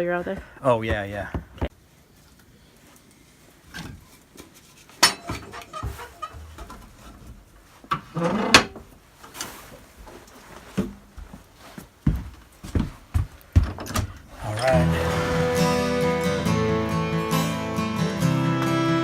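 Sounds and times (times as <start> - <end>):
short pitched sound: 14.4 - 17.0.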